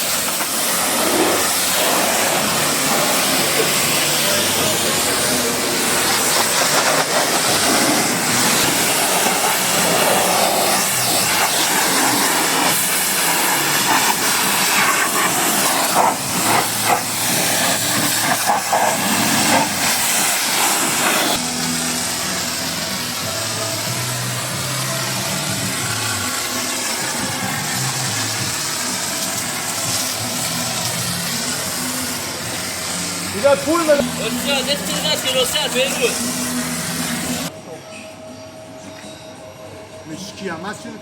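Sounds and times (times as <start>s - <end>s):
high-pressure water spray hissing: 0.0s - 37.5s.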